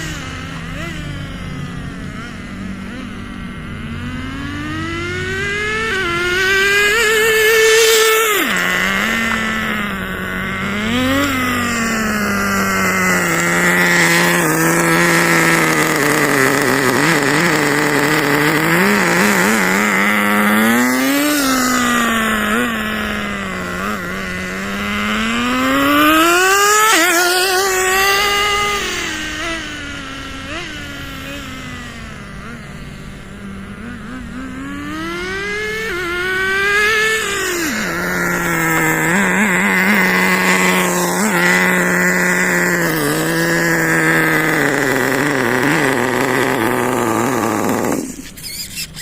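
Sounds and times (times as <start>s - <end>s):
rc car nitro engine revving: 0.0s - 49.0s.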